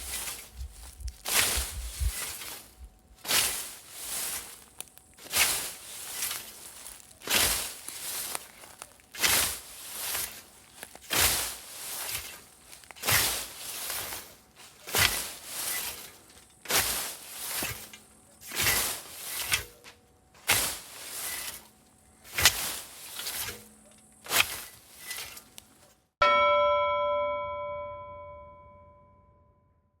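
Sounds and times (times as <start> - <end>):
scythe swishing through grass: 0.0 - 26.0
metallic ringing tone: 26.2 - 30.0.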